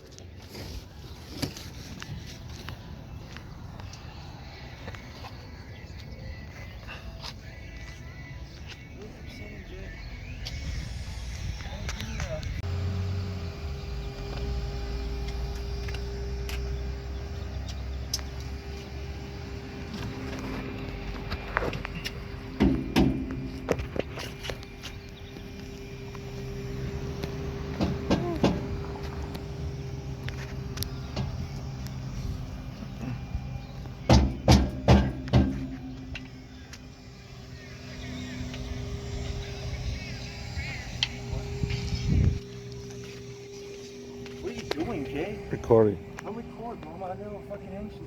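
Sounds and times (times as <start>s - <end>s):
constant tone: 0.0s - 48.0s
low engine hum: 0.0s - 48.0s
loud knocks: 34.1s - 35.8s.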